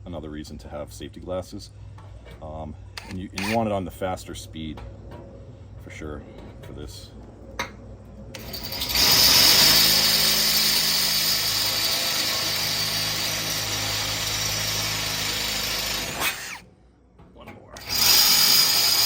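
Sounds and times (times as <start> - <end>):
power drill boring through steel: 3.0 - 3.6, 8.4 - 16.6, 17.8 - 19.0.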